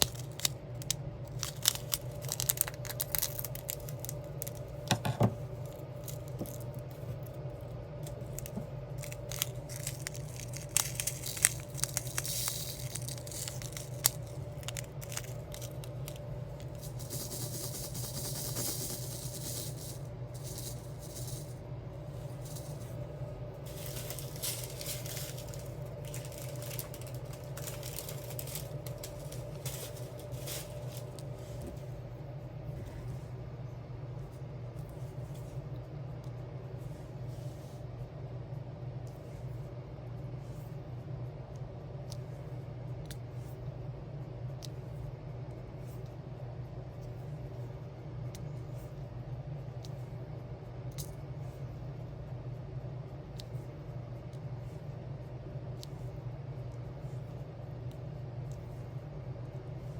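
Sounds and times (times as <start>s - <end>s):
plastic crinkling: 0.0s - 21.6s, 23.6s - 31.4s
steady low hum: 0.0s - 59.9s.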